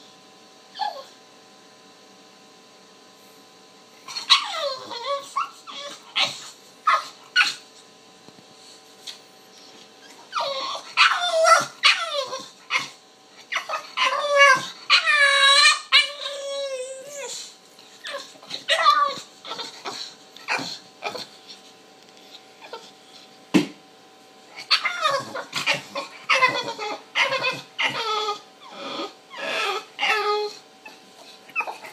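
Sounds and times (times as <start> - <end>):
puppy whining and yelping: 0.7 - 1.2, 4.0 - 7.6, 10.0 - 21.4, 22.4 - 23.0, 24.5 - 31.9.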